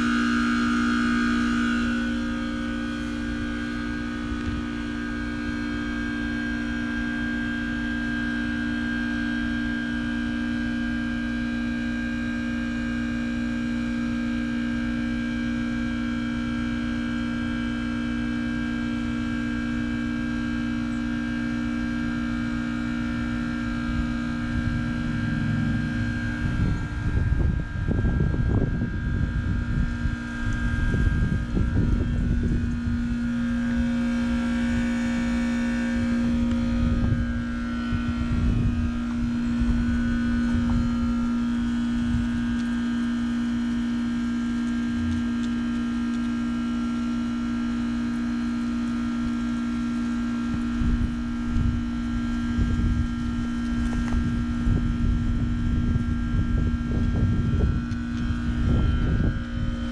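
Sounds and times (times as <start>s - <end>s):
compressor humming: 0.0s - 59.9s
uneven rushing noise: 24.2s - 28.0s.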